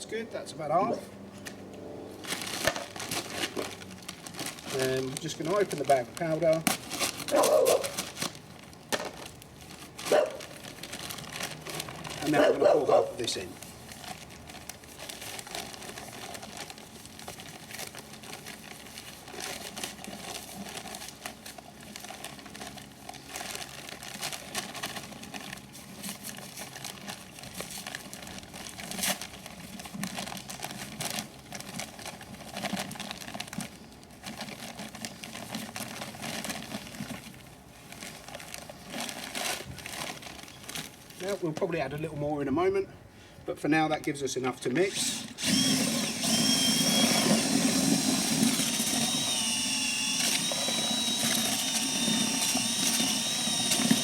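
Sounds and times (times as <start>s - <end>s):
powder bag crinkling and rustling: 2.2s - 42.3s, 44.0s - 54.0s.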